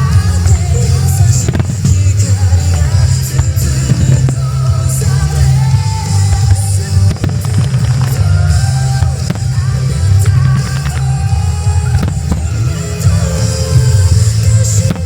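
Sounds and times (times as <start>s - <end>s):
fireworks bursting and crackling: 0.0s - 15.0s
music with heavy bass beat: 0.0s - 15.0s.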